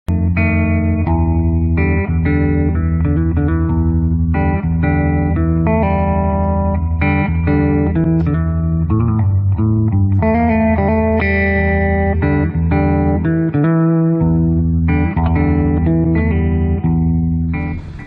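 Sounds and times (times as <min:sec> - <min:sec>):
bass line: 0:00.1 - 0:18.0
guitar-led instrumental tune: 0:00.1 - 0:18.0.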